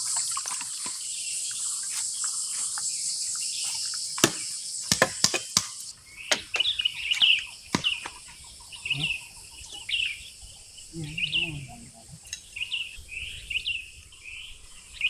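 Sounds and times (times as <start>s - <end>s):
crickets trilling: 0.0s - 15.0s
sharp knocks: 4.2s - 6.7s.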